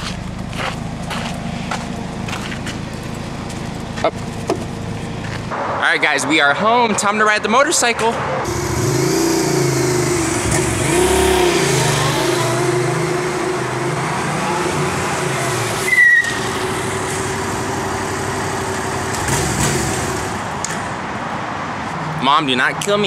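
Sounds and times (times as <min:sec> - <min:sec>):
motorcycle engine running: 0:08.5 - 0:20.3.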